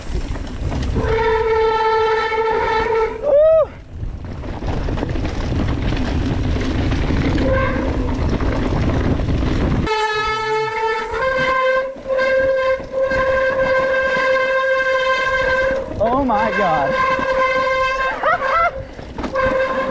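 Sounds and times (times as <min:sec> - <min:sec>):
bike rolling on trail: 0:00.0 - 0:19.9
bike disc brakes honking: 0:09.9 - 0:19.9.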